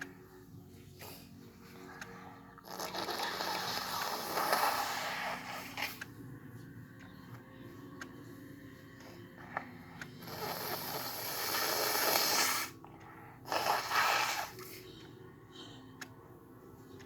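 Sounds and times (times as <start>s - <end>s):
person blowing nose: 2.6s - 5.9s, 10.3s - 12.7s, 13.5s - 14.6s.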